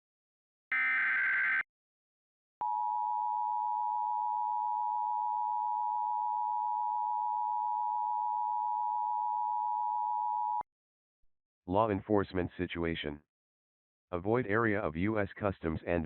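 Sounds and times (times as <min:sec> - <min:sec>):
steady two-tone alarm: 0:00.7 - 0:01.7, 0:02.6 - 0:10.6.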